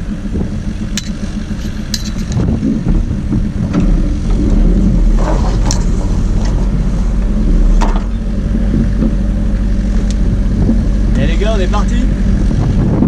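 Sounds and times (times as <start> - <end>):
boat engine humming: 0.0 - 13.0
gear knocking and clicking: 0.9 - 6.7.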